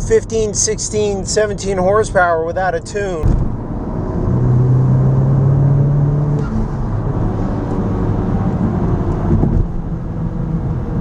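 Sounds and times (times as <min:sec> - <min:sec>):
turbo whoosh: 0:03.2 - 0:04.8
car engine accelerating hard: 0:03.2 - 0:11.0.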